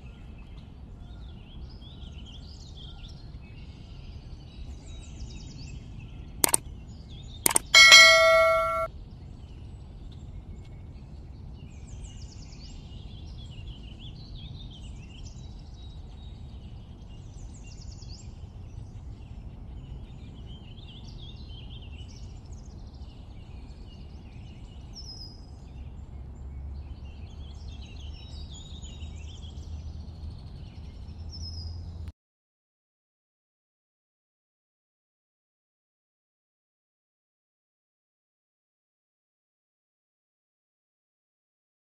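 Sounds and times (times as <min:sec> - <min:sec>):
metallic clang ringing: 0:07.5 - 0:08.9.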